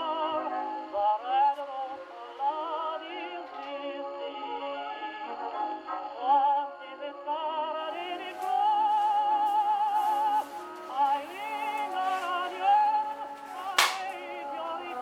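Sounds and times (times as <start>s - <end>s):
old recording of person singing: 0.0s - 15.0s
record crackle: 7.9s - 15.0s.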